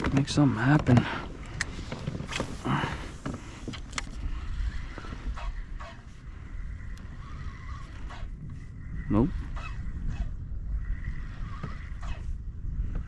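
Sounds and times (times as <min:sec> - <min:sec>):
wind and water past hull: 0:00.0 - 0:13.0.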